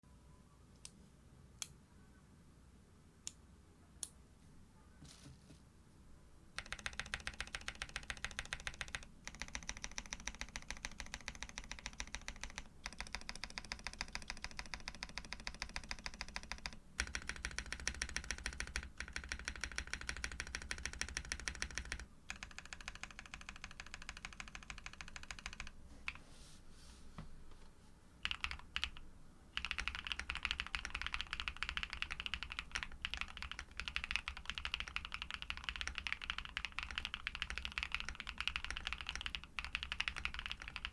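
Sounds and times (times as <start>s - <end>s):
mechanical keyboard typing: 6.6s - 26.2s, 28.2s - 29.0s, 29.6s - 40.9s.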